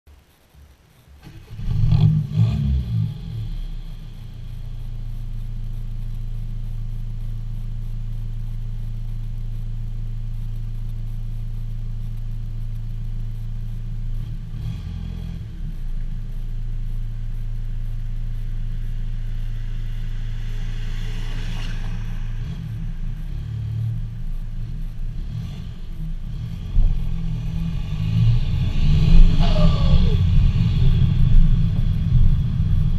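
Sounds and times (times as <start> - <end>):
engine revving: 1.2 - 5.2, 14.1 - 16.4, 17.3 - 32.9.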